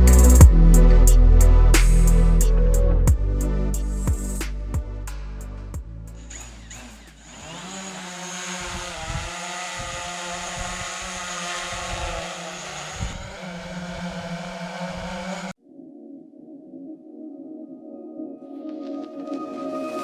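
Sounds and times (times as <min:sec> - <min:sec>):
drone propellers buzzing: 0:06.0 - 0:15.6.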